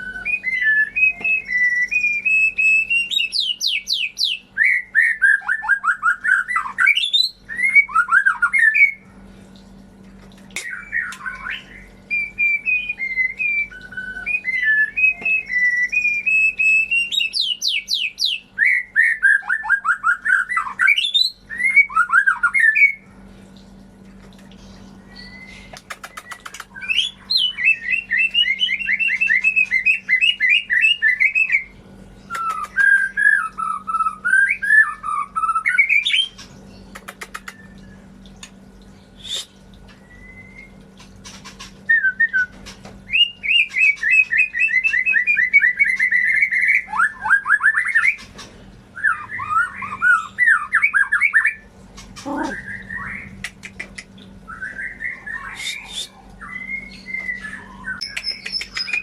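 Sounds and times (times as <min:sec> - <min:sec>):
bird singing varied song: 0:00.0 - 0:09.0, 0:10.6 - 0:23.0, 0:24.5 - 0:38.1, 0:39.0 - 0:59.0
sharp bird clicks: 0:25.7 - 0:26.8, 0:32.3 - 0:32.9, 0:36.4 - 0:37.7, 0:53.4 - 0:54.2, 0:58.0 - 0:59.0.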